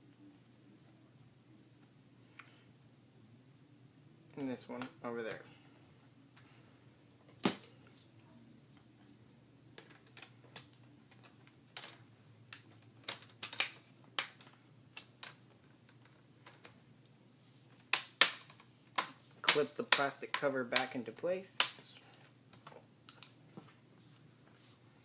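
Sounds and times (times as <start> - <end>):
plastic parts clicking: 9.8 - 16.8.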